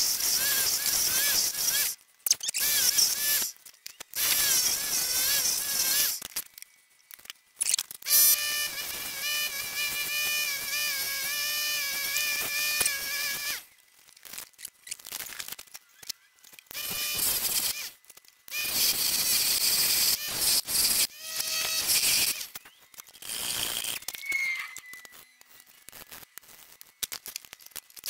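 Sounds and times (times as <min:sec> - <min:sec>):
scattered clicks: 0:06.1 - 0:08.1.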